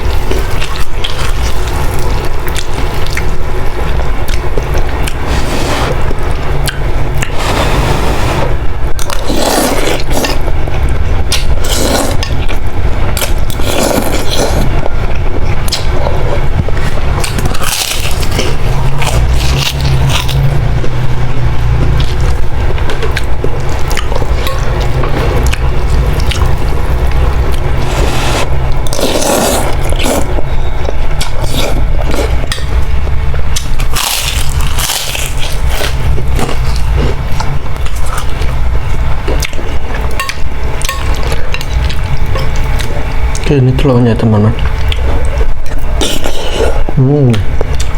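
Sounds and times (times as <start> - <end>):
steady low rumble: 0.0 - 47.9
slurping and chewing: 4.3 - 10.5, 11.3 - 14.9, 15.6 - 20.6, 21.9 - 30.6, 31.2 - 32.8, 33.6 - 38.6, 44.8 - 46.9.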